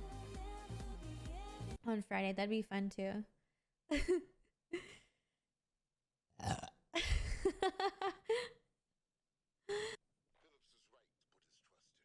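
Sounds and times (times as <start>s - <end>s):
woman burping: 6.4s - 7.0s.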